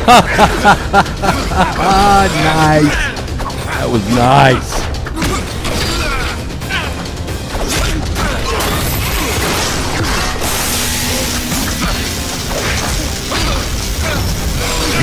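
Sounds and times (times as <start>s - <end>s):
action film music: 0.0s - 15.0s
hit and crash sound effects: 8.5s - 15.0s.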